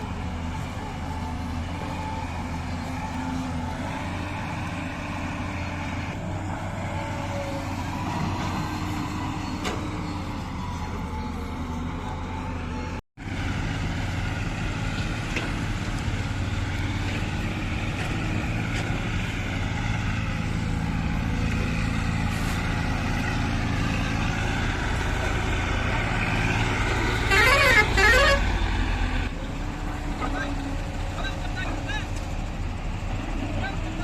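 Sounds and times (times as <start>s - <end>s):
heavy vehicle engine running: 0.0s - 34.0s
warbling vehicle horn tune: 27.1s - 28.6s.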